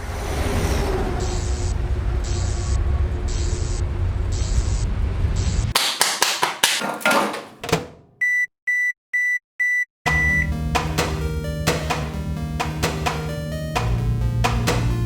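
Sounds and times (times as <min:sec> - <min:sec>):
sharp knocks: 0:05.8 - 0:08.1
short high beeps: 0:08.2 - 0:10.5
music with low bass: 0:10.1 - 0:15.0.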